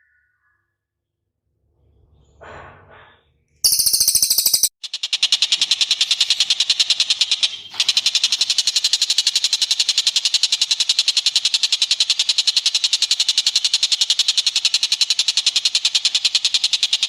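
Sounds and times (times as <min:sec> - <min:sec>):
bird rattling trill: 0:03.6 - 0:17.0.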